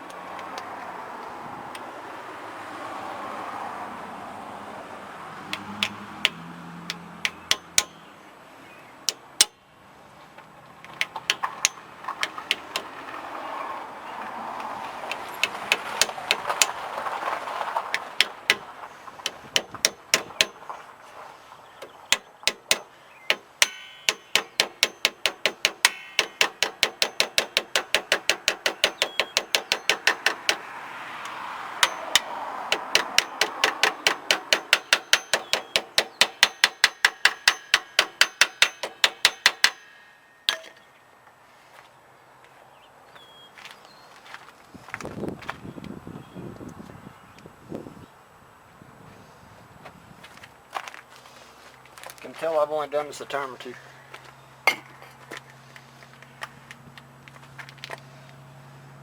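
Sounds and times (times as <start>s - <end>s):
hammer tapping metal: 5.5s - 8.1s, 9.1s - 9.6s, 10.9s - 12.9s, 15.1s - 16.8s, 18.0s - 20.7s, 21.8s - 40.9s, 54.7s - 55.0s.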